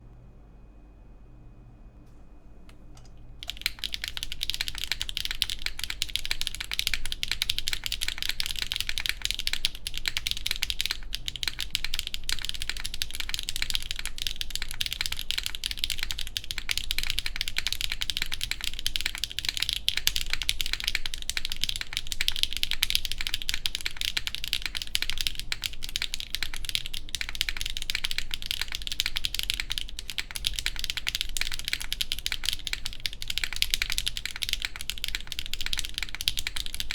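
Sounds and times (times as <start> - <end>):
fast mechanical keyboard typing: 3.4 - 36.9.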